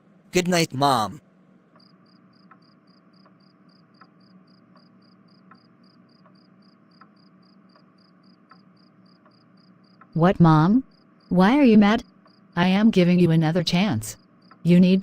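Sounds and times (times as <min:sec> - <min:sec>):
faint ticking: 0:01.7 - 0:10.2, 0:14.2 - 0:15.0
crickets chirping: 0:01.8 - 0:12.6, 0:14.2 - 0:15.0.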